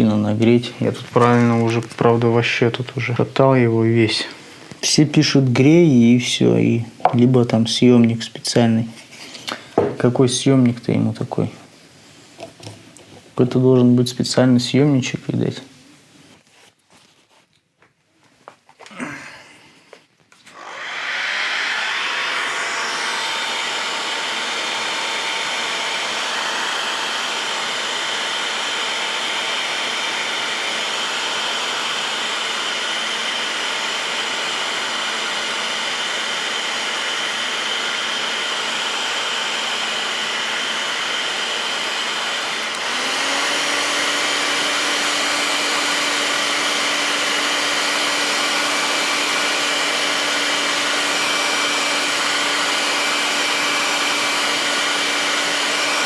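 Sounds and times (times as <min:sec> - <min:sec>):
hot-air gun blowing: 0:20.5 - 0:56.0.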